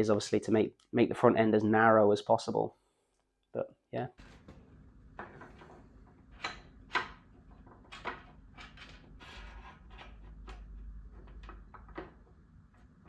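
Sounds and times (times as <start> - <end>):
parts knocking and clicking: 5.2 - 9.2, 9.9 - 13.0.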